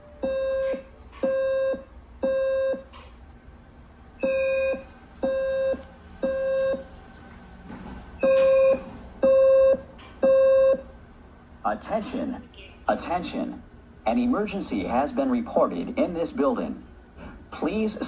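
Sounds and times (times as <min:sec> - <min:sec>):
fire alarm beeps: 0:00.1 - 0:02.9, 0:04.2 - 0:06.9, 0:08.2 - 0:10.9.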